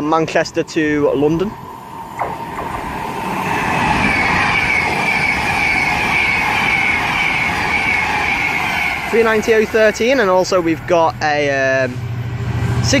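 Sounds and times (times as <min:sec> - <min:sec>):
electric train passing: 0:00.0 - 0:13.0
high whine falling in pitch: 0:02.0 - 0:11.8.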